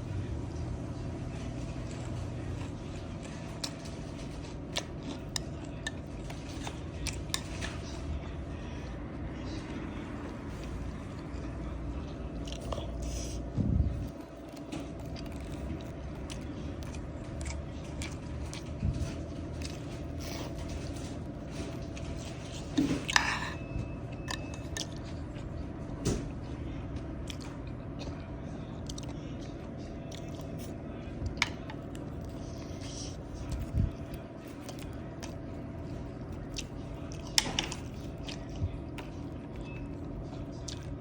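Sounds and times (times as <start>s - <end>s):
person chewing and biting: 31.4s - 41.0s.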